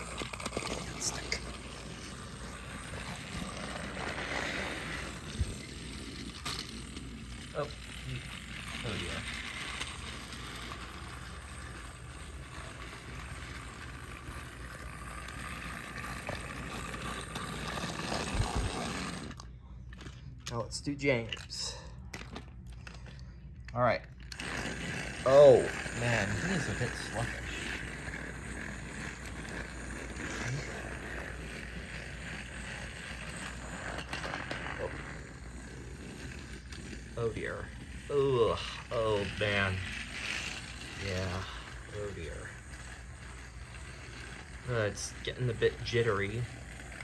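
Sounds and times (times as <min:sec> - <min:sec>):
toy train clicks: 0:00.0 - 0:20.6, 0:24.2 - 0:47.0
toy train motor whirring: 0:00.0 - 0:47.0.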